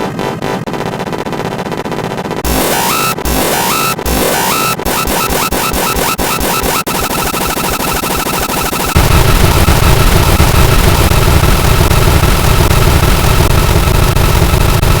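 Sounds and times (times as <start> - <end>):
harsh distorted pulsing noise: 0.0 - 15.0
deep rumble: 9.0 - 15.0.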